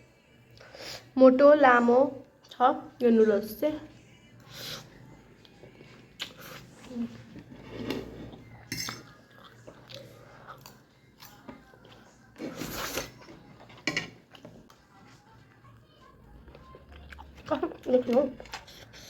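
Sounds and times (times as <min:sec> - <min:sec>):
utensils clinking against a dish: 0:07.6 - 0:09.2, 0:12.4 - 0:14.5.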